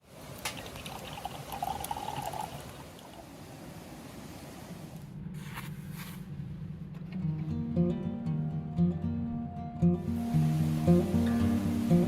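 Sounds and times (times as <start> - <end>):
liquid pouring trickle: 0.3 - 3.3
low hum: 4.9 - 12.0.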